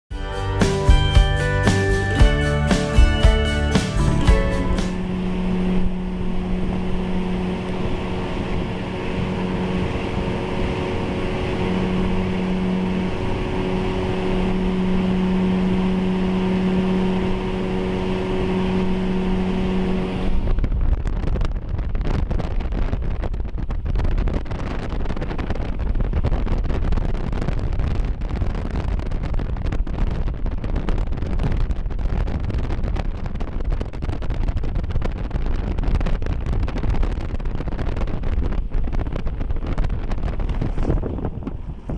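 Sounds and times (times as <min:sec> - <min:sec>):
motorboat engine: 0:00.2 - 0:20.9, 0:38.1 - 0:41.9
wind buffeting microphone: 0:04.2 - 0:41.9.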